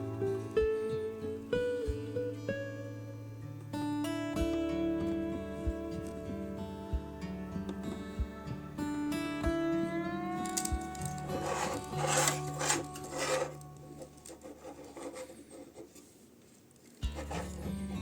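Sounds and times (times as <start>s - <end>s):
background music: 0.0s - 15.6s, 17.0s - 18.0s
rough rasping strokes: 11.0s - 16.2s, 17.0s - 18.0s.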